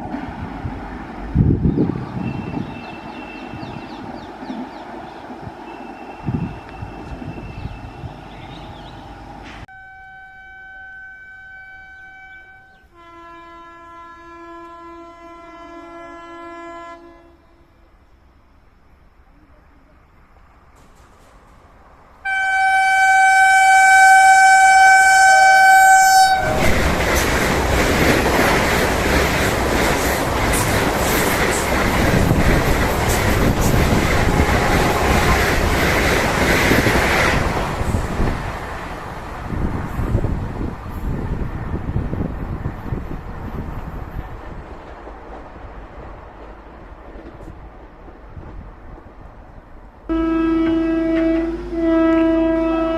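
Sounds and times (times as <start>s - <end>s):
train passing at high speed: 0.0s - 10.2s, 19.9s - 52.9s
train horn: 9.7s - 18.0s, 22.2s - 26.9s, 34.1s - 35.7s, 50.1s - 52.9s.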